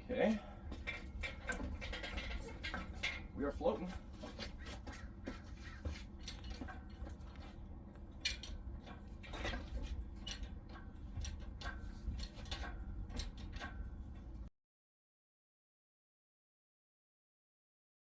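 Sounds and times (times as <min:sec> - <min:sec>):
lifting chain clinking and rattling: 0:00.0 - 0:14.5.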